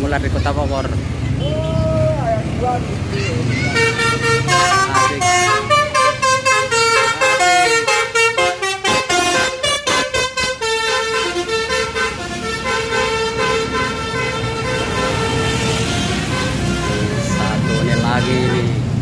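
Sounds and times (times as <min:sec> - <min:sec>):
multi-tone air horn melody: 0:03.7 - 0:18.8.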